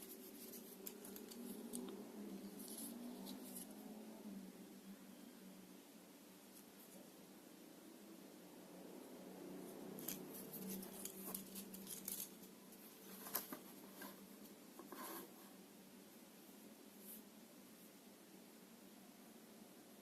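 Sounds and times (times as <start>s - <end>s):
small objects scratching and clicking: 0.0s - 3.8s, 10.0s - 15.4s.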